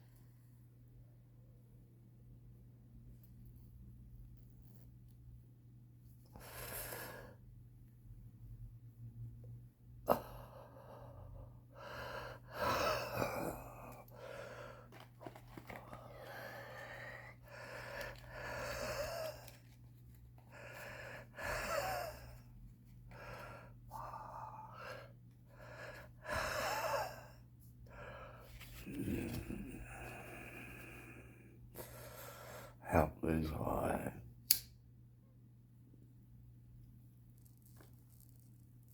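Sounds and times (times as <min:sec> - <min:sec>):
low steady hum: 0:00.0 - 0:38.9
wheezing laboured breathing: 0:10.1 - 0:19.8, 0:20.4 - 0:32.8
sharp click: 0:34.5 - 0:34.7.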